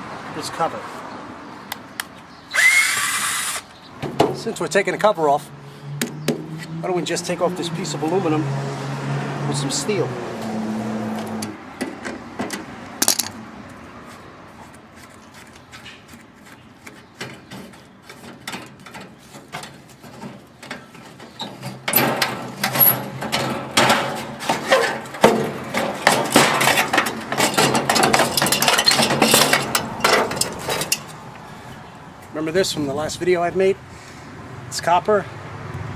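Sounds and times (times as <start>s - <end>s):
metal clinking and scraping: 16.8s - 31.2s.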